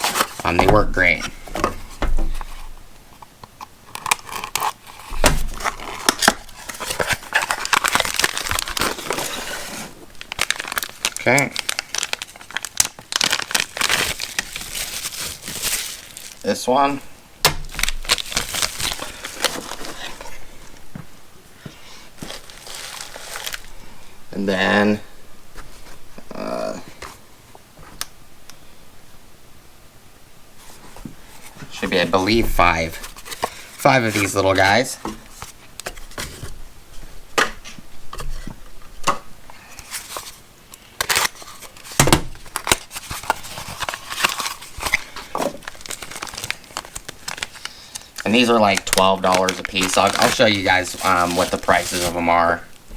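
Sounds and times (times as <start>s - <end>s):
packaging clicks and crinkles: 0.0s - 2.6s, 3.4s - 20.8s, 22.2s - 23.8s, 31.4s - 36.6s, 39.5s - 52.9s.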